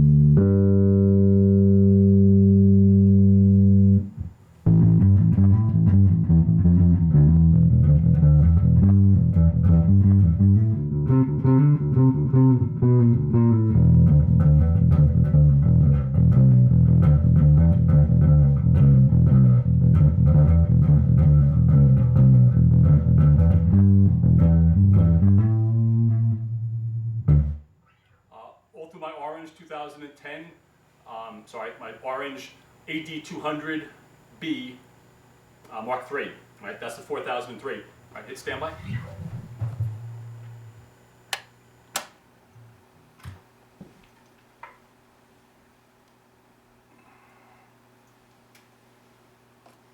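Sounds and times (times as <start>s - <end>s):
electric bass playing: 0.0s - 27.7s, 38.5s - 41.1s.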